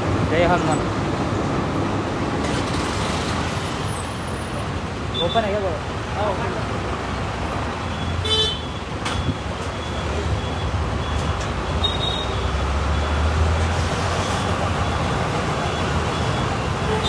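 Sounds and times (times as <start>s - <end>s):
road traffic: 0.0s - 17.0s.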